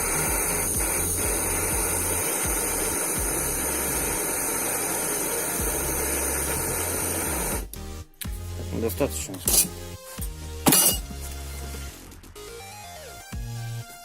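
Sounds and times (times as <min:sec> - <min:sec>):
gas torch hissing: 0:00.0 - 0:09.9.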